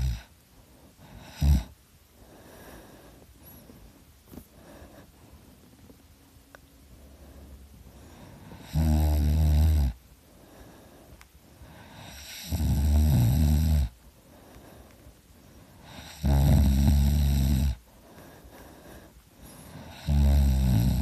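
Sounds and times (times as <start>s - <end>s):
person snoring heavily: 0.0s - 0.3s, 1.0s - 1.8s, 8.2s - 10.0s, 11.6s - 14.0s, 15.8s - 17.9s, 19.4s - 21.0s
soft breathing: 0.0s - 8.8s, 9.9s - 12.5s, 13.8s - 16.7s, 17.6s - 21.0s.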